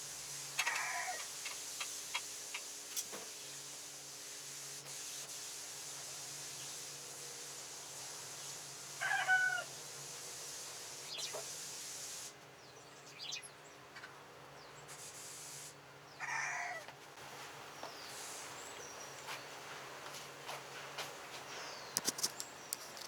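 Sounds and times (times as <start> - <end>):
chicken calling: 0.6 - 2.2, 9.0 - 9.7, 16.2 - 16.9.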